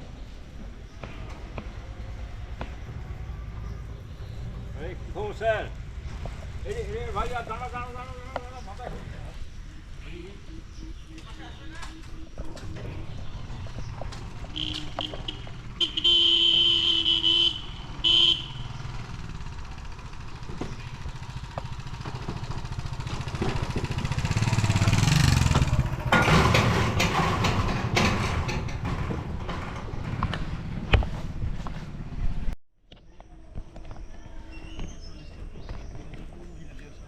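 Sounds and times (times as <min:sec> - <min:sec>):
horn blasts: 0:14.4 - 0:19.0
train wheels clattering on rails: 0:19.1 - 0:31.2.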